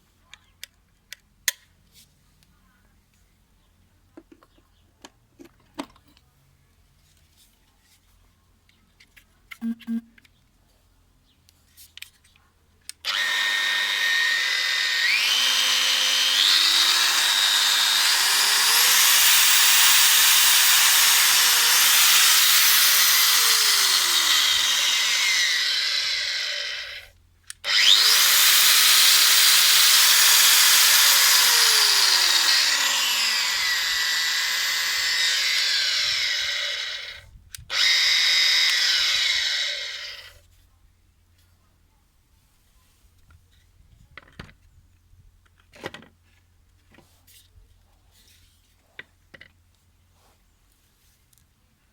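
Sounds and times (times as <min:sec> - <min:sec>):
angle grinder motor whine: 0:13.1 - 0:27.1, 0:27.7 - 0:40.3.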